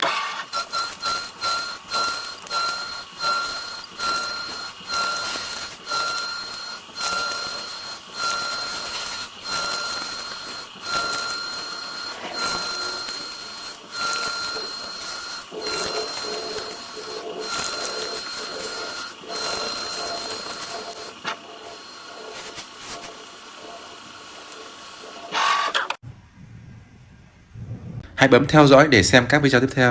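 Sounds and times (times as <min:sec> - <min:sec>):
lathe cutting whine: 0:00.0 - 0:26.0
low machine tone: 0:00.5 - 0:22.3.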